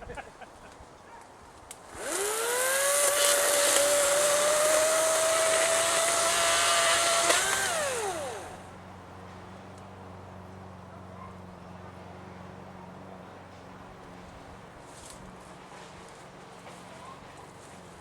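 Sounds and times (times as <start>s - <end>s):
electric chainsaw motor whining: 1.9s - 8.7s.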